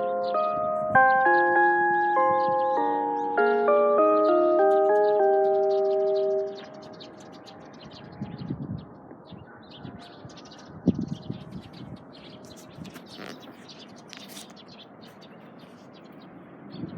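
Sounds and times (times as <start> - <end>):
small birds chirping: 0.0 - 16.9.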